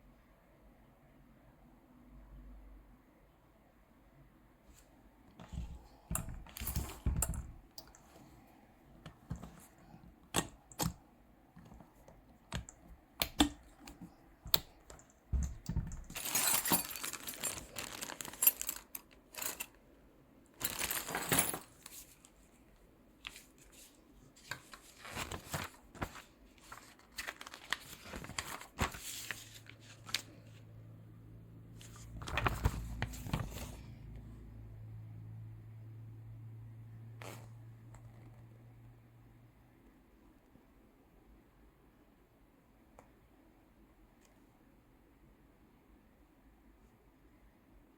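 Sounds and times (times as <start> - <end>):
low steady hum: 0.0 - 47.9
clicks and knocks of handling: 5.4 - 8.2, 9.0 - 11.0, 11.6 - 19.7
crinkling: 11.6 - 19.8, 20.6 - 22.5, 23.2 - 30.4.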